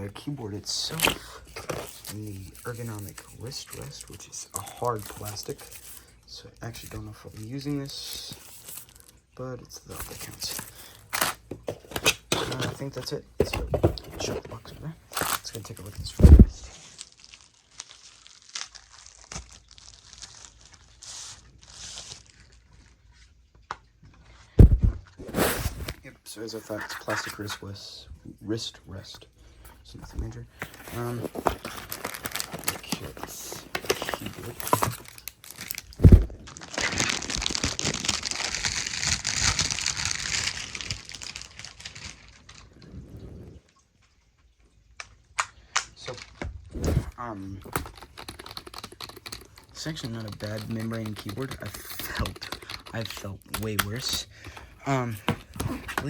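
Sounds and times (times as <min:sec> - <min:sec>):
packaging crinkling: 0:00.6 - 0:09.3, 0:09.9 - 0:23.3, 0:29.5 - 0:43.0, 0:45.4 - 0:56.0
heavy thump: 0:24.6 - 0:25.3, 0:36.0 - 0:36.4.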